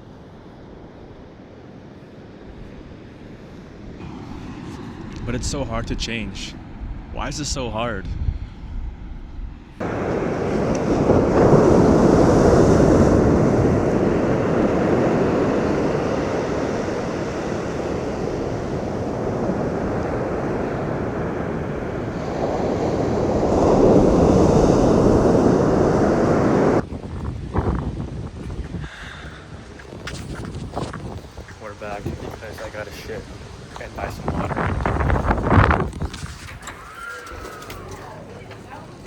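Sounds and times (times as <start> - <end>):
wind buffeting microphone: 2.4 - 39.0
ocean surf washing onto beach: 9.8 - 26.8, 31.6 - 36.6.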